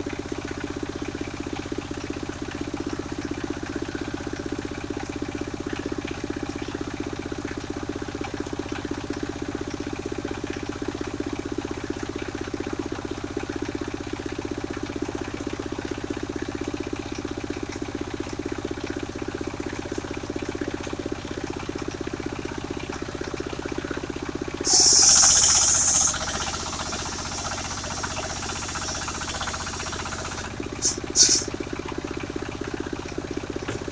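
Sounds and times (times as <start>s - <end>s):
sawmill engine chugging: 0.0s - 33.9s
loud high hiss: 24.6s - 31.5s.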